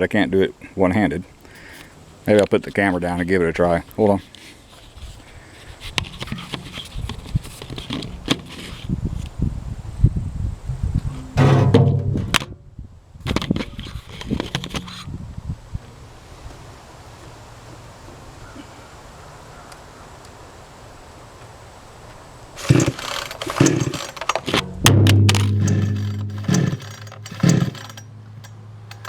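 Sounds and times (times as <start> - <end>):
chainsaw engine firing: 22.6 - 28.2
chainsaw pull cord: 22.6 - 29.0.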